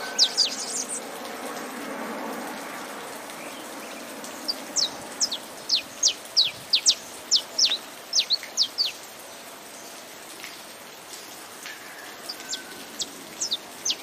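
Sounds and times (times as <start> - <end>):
finch chirping: 0.0 - 1.0, 4.5 - 9.0, 12.3 - 14.0
rain hiss: 0.0 - 14.0.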